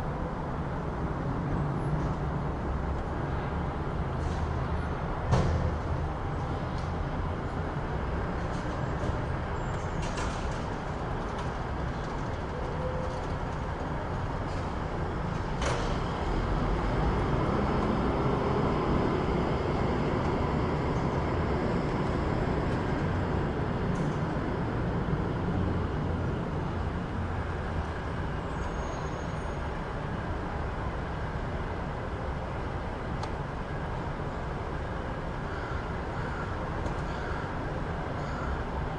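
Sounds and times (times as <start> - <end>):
traffic rumble: 0.0 - 38.9.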